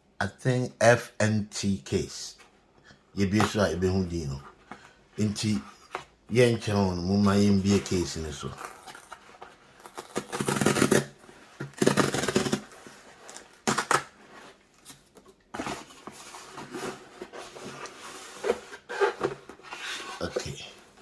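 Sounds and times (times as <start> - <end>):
packaging rustling and scraping: 7.6 - 21.0.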